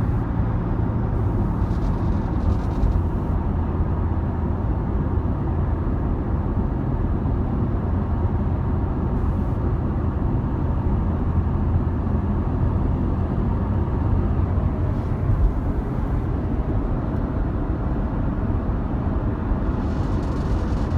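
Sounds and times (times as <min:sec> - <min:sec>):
car engine low rumble: 0:00.0 - 0:20.9.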